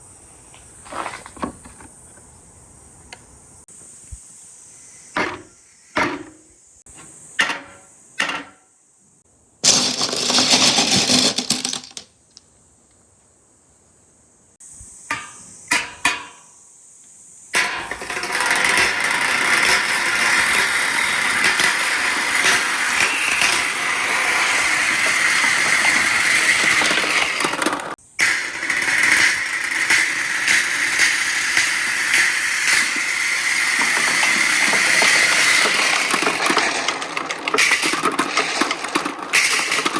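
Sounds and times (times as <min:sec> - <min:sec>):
marbles rolling on a track: 0:09.6 - 0:12.1, 0:17.6 - 0:39.9.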